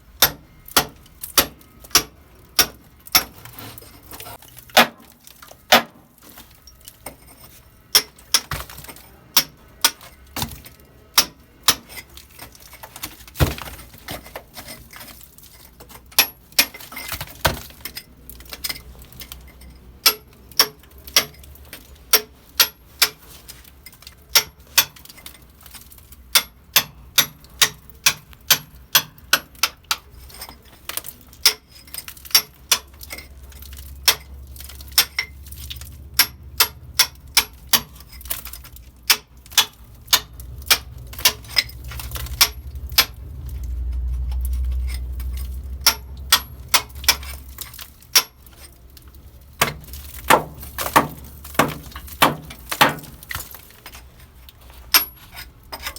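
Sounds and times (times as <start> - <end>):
hand tool tapping on metal: 26.3 - 54.0, 54.8 - 55.9
low rumble: 39.8 - 47.7.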